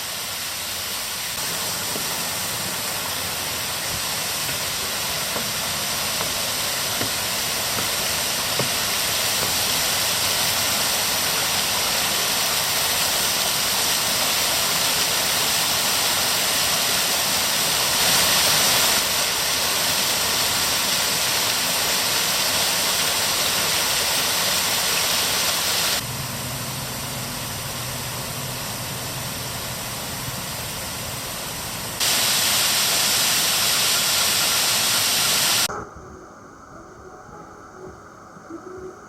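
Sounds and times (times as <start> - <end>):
steady rushing hiss: 0.0 - 35.8
insects: 35.7 - 39.0.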